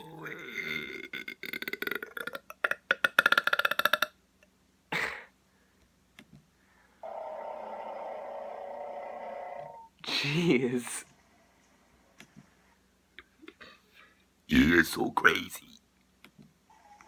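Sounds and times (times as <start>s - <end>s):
person burping: 0.0s - 4.2s, 4.9s - 5.3s.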